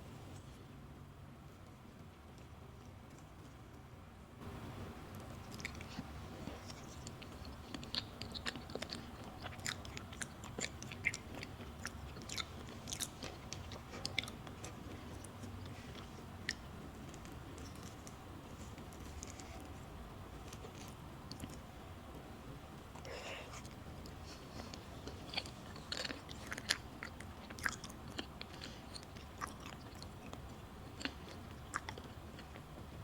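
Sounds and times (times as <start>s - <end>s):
chewing with mouth clicks: 5.1s - 19.8s, 20.4s - 21.6s, 23.0s - 33.0s.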